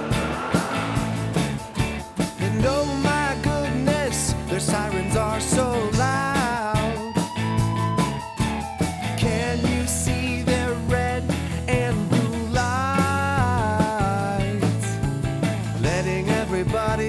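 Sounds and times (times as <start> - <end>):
rock children's song: 0.0 - 17.0
person singing: 2.4 - 7.1.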